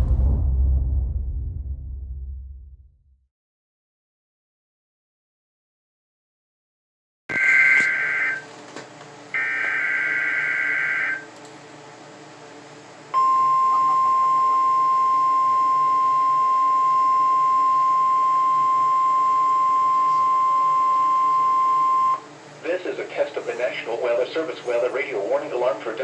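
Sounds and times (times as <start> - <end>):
high steady alarm tone: 7.3 - 8.4, 9.4 - 11.3, 13.2 - 22.2
faint radio hiss: 22.6 - 26.0.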